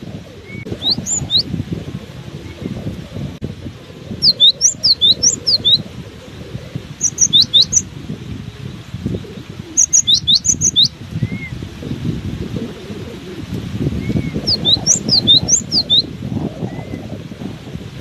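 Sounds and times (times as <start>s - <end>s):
wind rumbling on microphone: 0.0s - 18.0s
bird chirping: 0.4s - 1.5s, 4.2s - 5.8s, 7.0s - 7.9s, 9.8s - 11.4s, 14.0s - 16.1s.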